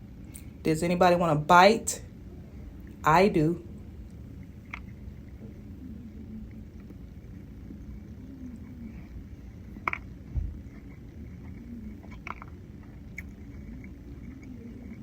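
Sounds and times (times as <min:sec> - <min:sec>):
steady low hum: 0:00.0 - 0:15.0
wet chewing: 0:06.3 - 0:15.0.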